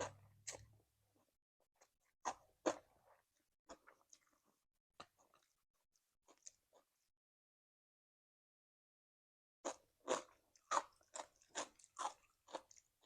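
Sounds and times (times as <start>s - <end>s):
person crunching food: 9.6s - 13.0s.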